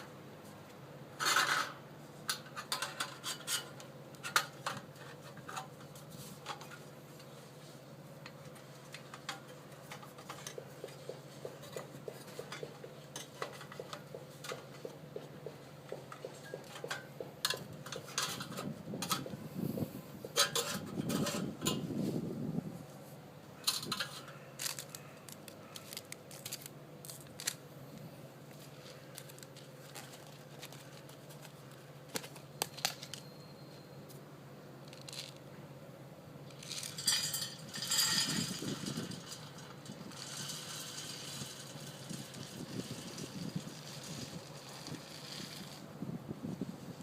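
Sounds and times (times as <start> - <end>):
crinkly rustling: 23.8 - 33.2.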